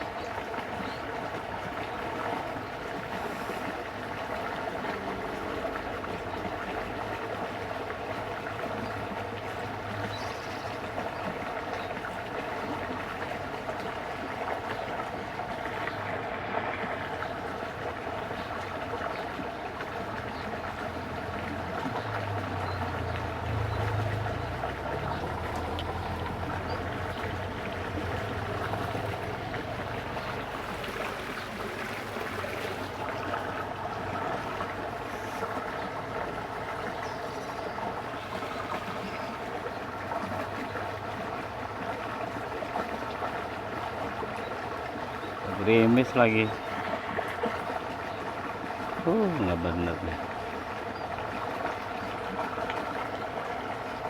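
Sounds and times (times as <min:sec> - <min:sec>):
water rushing in a ditch: 0:00.0 - 0:54.0
low motor hum: 0:12.2 - 0:45.6.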